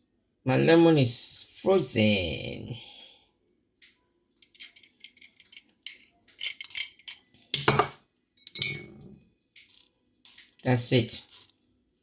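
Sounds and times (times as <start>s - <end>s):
glassware and utensils clinking: 4.4s - 10.4s.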